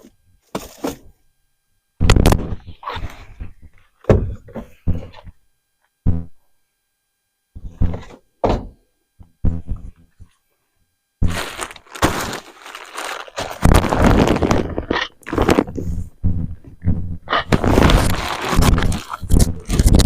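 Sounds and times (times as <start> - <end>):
short thunks and knocks: 7.6 - 8.8.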